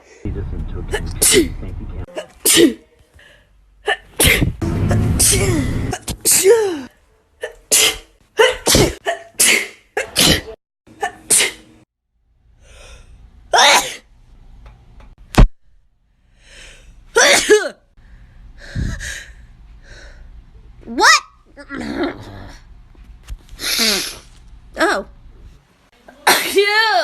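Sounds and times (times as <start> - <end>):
people sneezing: 2.2 - 2.9, 7.4 - 11.6.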